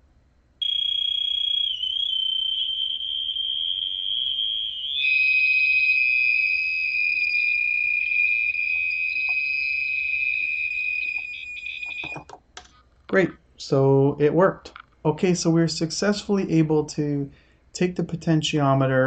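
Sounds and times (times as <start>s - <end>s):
buzzer high-pitched tone: 0.6s - 12.3s.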